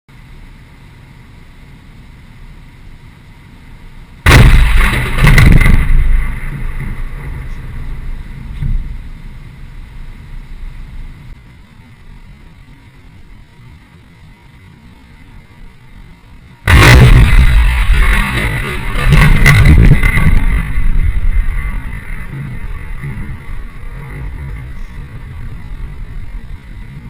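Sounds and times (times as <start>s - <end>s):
low rumble: 0.2s - 14.6s, 15.2s - 27.0s
loud blast: 4.2s - 9.2s, 16.7s - 25.8s.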